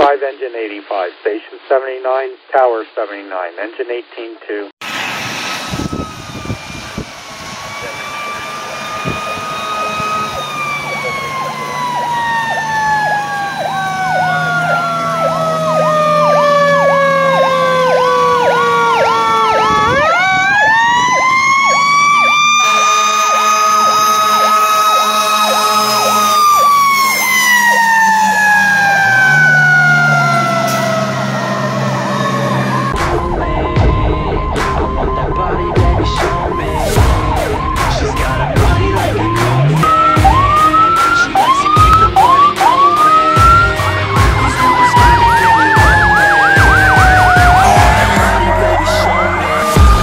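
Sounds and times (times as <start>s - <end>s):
electronic siren yelping: 5.4s - 50.0s.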